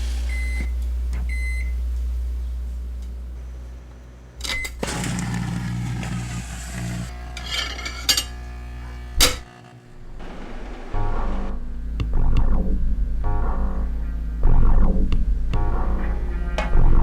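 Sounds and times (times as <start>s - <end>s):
microwave oven hum: 0.0s - 11.8s
clattering and crackling in oven: 4.4s - 9.8s.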